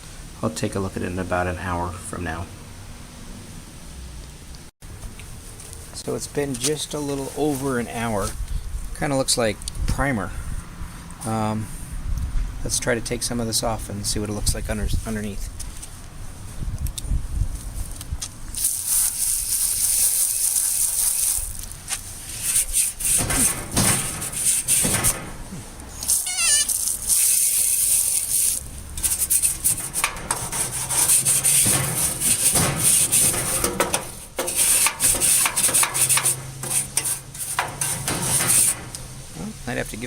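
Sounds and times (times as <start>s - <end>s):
scrubbing scrape on steel: 18.6s - 39.2s
brief squeak: 26.1s - 26.8s.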